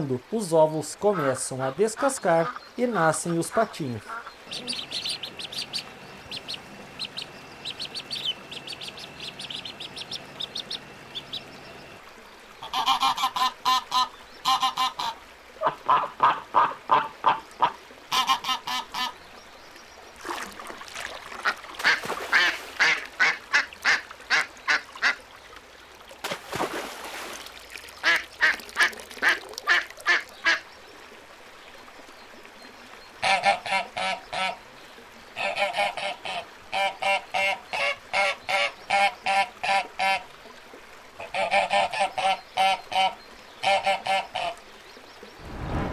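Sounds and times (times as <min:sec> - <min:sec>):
ducks quacking: 0:01.0 - 0:12.0, 0:12.6 - 0:19.2, 0:21.4 - 0:25.2.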